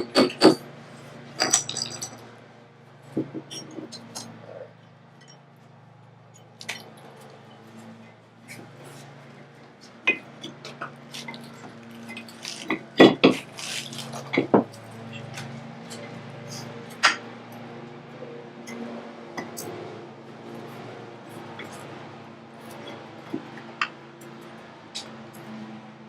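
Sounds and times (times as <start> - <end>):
metal tools clinking and knocking: 1.4 - 2.3.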